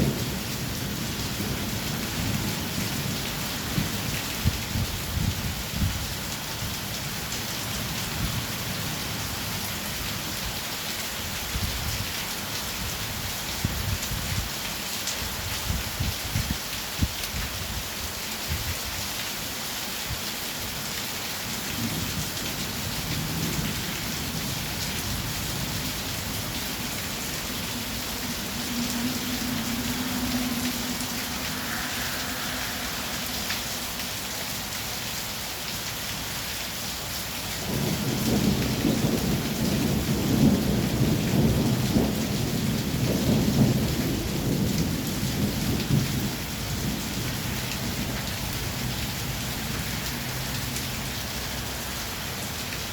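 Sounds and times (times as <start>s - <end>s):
heavy rain falling: 0.0s - 52.9s
rumble of thunder: 37.6s - 49.0s.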